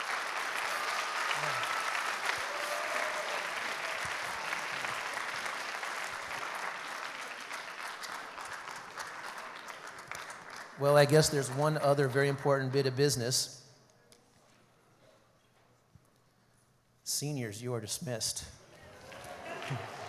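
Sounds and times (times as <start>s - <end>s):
audience applauding: 0.0s - 12.4s, 18.7s - 20.0s.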